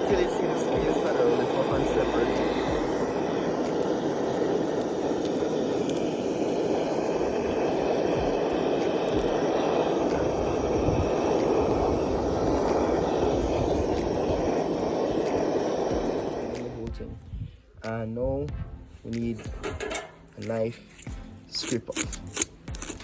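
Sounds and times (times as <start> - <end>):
blowtorch flame: 0.0 - 16.9, 19.3 - 20.3.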